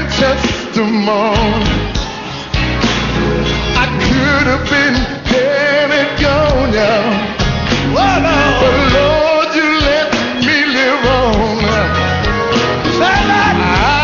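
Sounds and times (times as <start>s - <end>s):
band with drums: 0.0s - 14.0s
person singing long notes: 8.0s - 12.1s.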